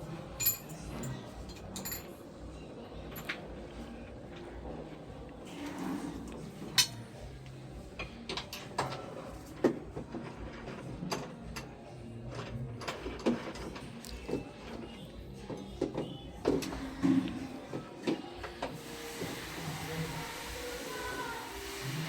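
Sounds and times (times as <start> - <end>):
metal tools clicking and clinking: 0.4 - 2.2.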